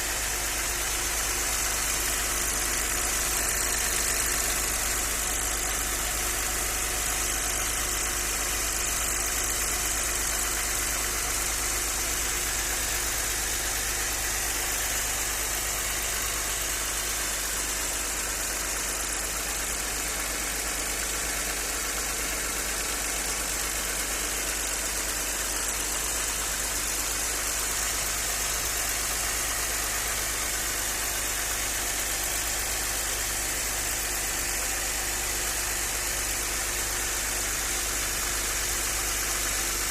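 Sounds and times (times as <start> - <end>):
car engine running with knock: 0.0 - 39.9.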